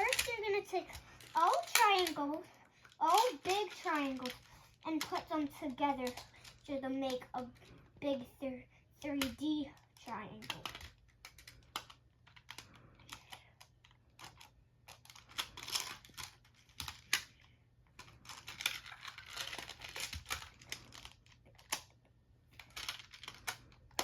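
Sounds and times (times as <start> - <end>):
plastic tiles clicking together: 0.0 - 7.4.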